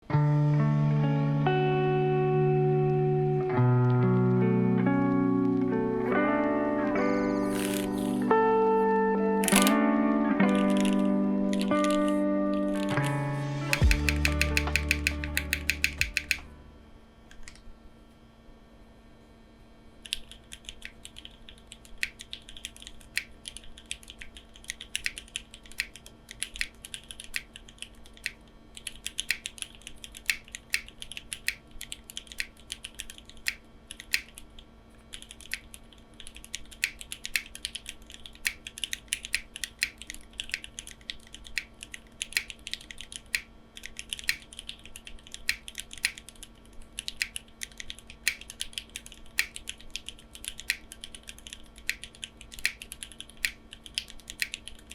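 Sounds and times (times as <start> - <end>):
faint steady hum: 0.0 - 54.9
mechanical keyboard typing: 7.5 - 8.2, 9.4 - 9.8, 10.4 - 16.5, 20.0 - 54.9.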